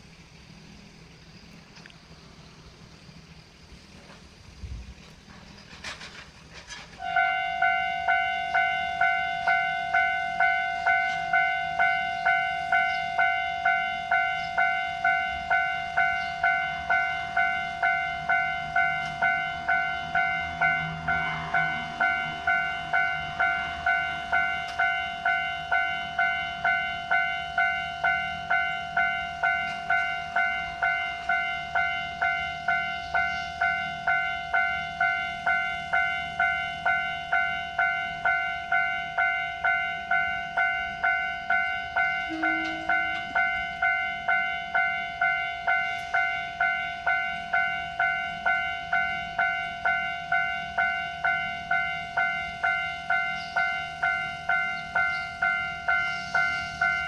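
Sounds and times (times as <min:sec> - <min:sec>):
railroad crossing warning bell: 0:05.1 - 0:57.0.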